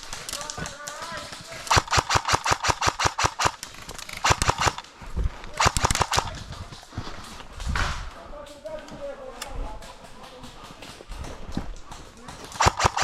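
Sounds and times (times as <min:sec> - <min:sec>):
airsoft guns firing bursts: 0:00.0 - 0:04.9, 0:05.5 - 0:06.8, 0:09.9 - 0:13.0.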